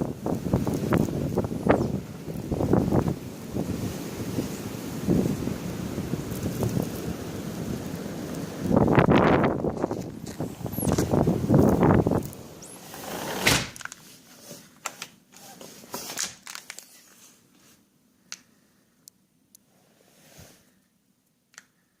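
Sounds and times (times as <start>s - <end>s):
wind buffeting microphone: 0.0s - 12.6s
door shutting: 9.9s - 11.2s, 12.6s - 13.9s.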